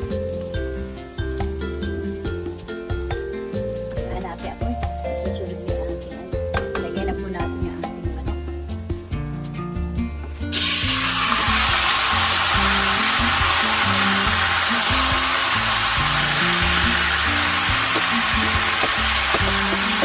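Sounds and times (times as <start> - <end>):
background music: 0.0 - 20.0
food sizzling in hot oil: 0.0 - 20.0.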